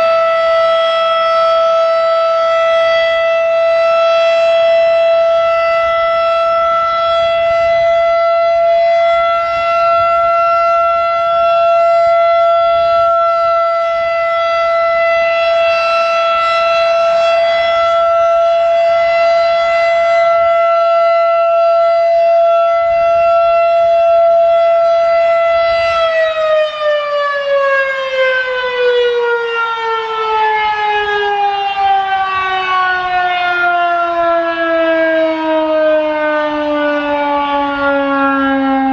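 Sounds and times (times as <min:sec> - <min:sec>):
siren pitch winding down: 0:00.0 - 0:38.9
warning siren steady alert tone: 0:00.0 - 0:38.9.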